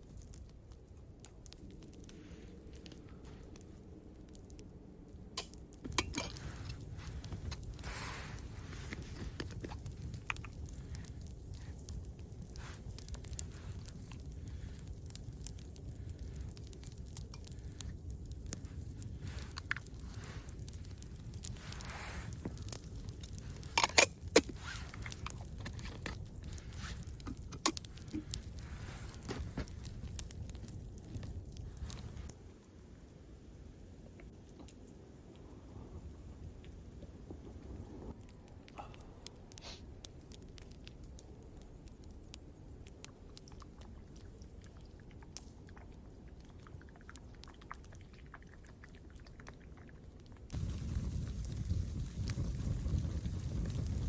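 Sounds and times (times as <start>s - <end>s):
low steady rumble: 0.0s - 32.4s, 50.5s - 54.0s
campfire crackling and popping: 0.0s - 32.7s, 34.2s - 54.0s.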